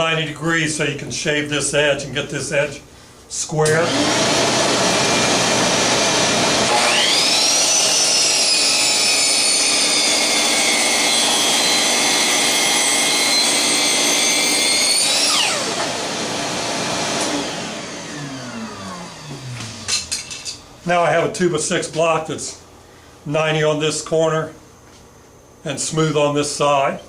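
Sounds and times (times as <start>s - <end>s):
miter saw whining: 3.6s - 20.6s.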